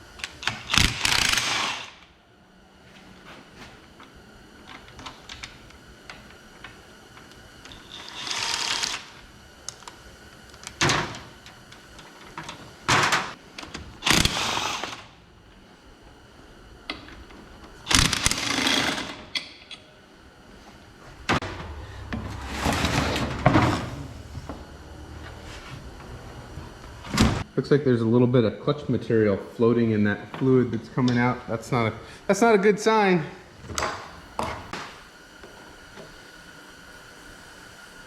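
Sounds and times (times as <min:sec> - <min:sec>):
power wrench bursts: 0:00.3 - 0:02.0, 0:07.7 - 0:09.2, 0:14.0 - 0:15.1, 0:17.9 - 0:19.2.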